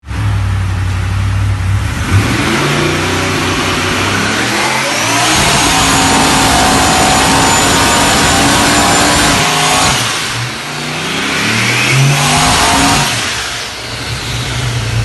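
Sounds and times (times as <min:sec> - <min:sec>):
car engine revving: 0:00.1 - 0:15.0.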